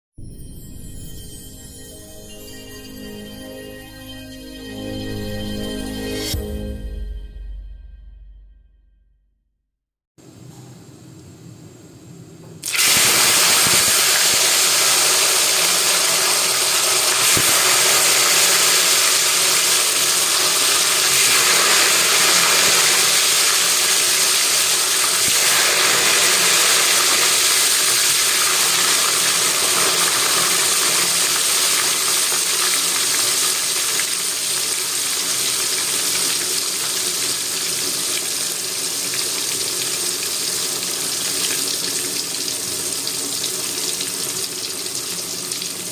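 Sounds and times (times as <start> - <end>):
tofu sizzling in hot oil: 12.6 - 45.9.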